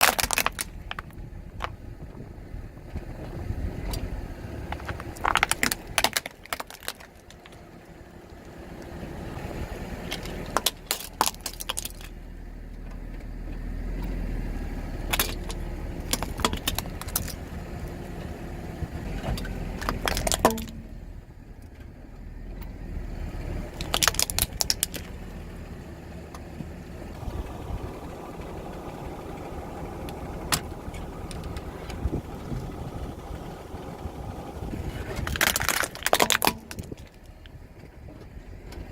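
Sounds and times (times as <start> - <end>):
tyres crushing objects: 0.0 - 1.2, 15.1 - 17.5, 19.2 - 20.8, 23.8 - 25.2, 34.8 - 37.2
car engine running low: 0.0 - 38.9.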